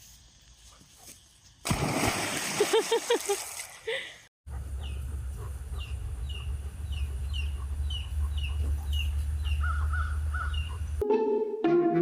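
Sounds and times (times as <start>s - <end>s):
bird chirping: 5.7s - 11.0s.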